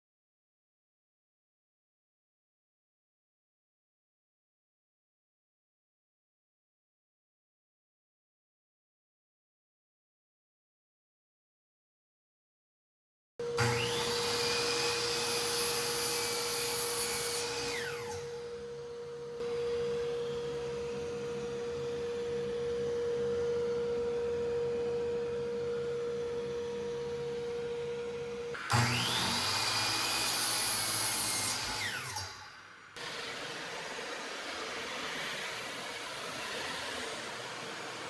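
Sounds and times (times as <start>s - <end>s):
dust extractor humming: 13.4s - 32.4s, 33.0s - 38.0s
miter saw motor whining: 13.4s - 38.0s.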